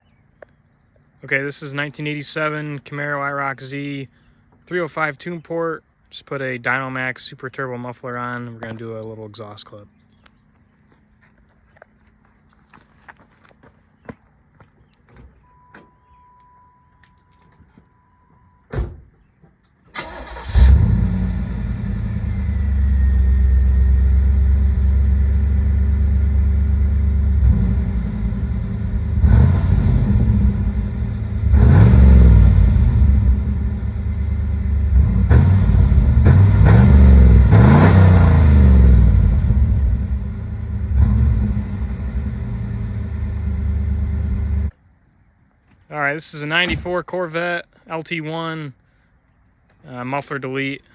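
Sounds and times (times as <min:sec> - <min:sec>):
car engine starting: 0:19.9 - 0:44.7
car engine idling and revving: 0:20.1 - 0:44.7.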